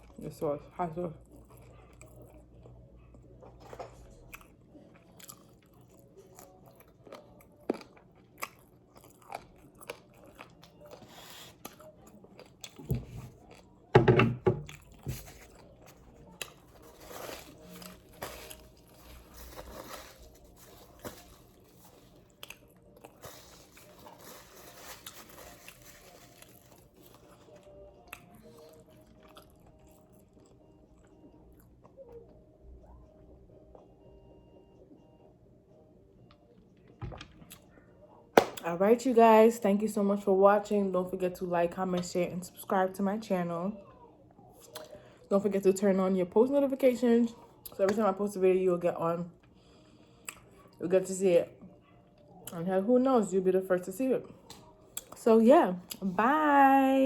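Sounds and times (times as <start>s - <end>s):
chewing crispy fried chicken: 1.2s - 13.9s, 14.6s - 33.9s, 43.8s - 45.2s, 49.3s - 50.8s.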